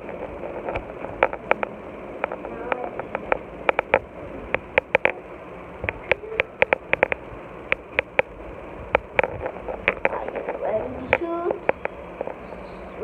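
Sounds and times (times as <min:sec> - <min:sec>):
steady hiss: 0:00.0 - 0:13.0
plastic toys clicking and tapping: 0:00.6 - 0:05.2, 0:05.9 - 0:08.3, 0:08.9 - 0:12.4.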